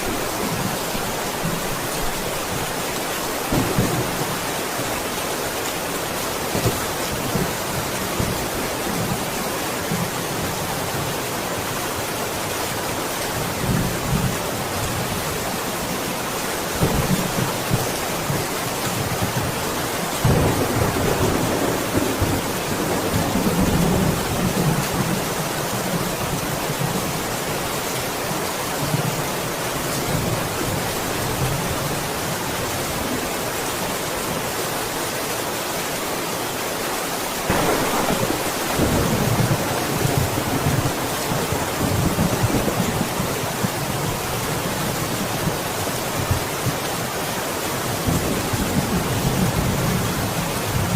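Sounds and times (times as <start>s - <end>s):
heavy rain: 0.0s - 50.9s
thunder rumbling: 3.4s - 4.9s, 20.2s - 25.2s, 37.5s - 43.8s.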